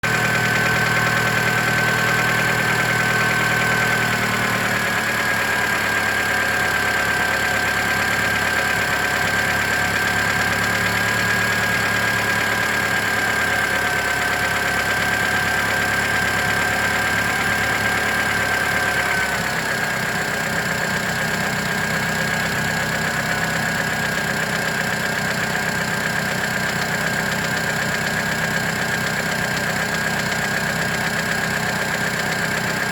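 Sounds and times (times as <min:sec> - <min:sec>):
car engine idling: 0:00.0 - 0:32.9
engine ticking: 0:00.0 - 0:32.9.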